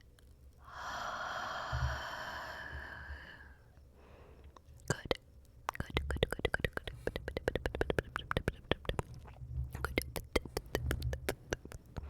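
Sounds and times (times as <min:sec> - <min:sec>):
breathy exhale: 0:00.6 - 0:04.5
wet mouth clicks and pops: 0:04.6 - 0:12.0.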